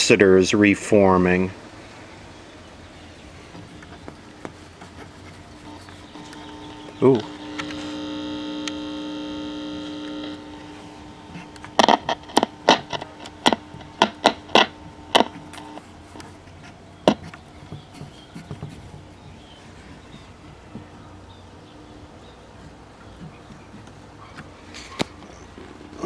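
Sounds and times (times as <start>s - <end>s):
speaker electrical hum: 0.0s - 26.0s
sharp crackles and pops: 5.6s - 19.5s.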